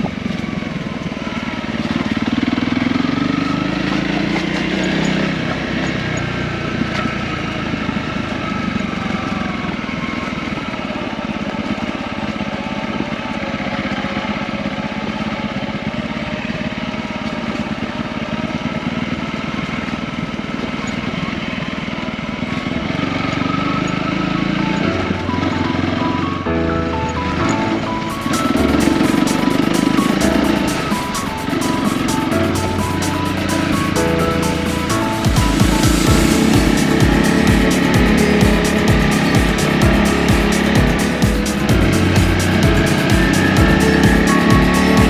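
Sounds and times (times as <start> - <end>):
motorcycle engine pulling away: 0.2 - 11.9, 32.9 - 45.0.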